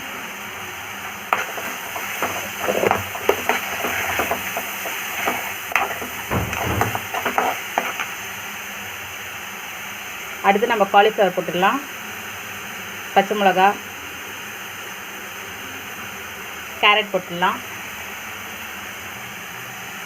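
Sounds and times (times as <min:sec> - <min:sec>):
oil sizzling: 0:00.3 - 0:11.0
spoon scraping and knocking pan: 0:01.0 - 0:08.2.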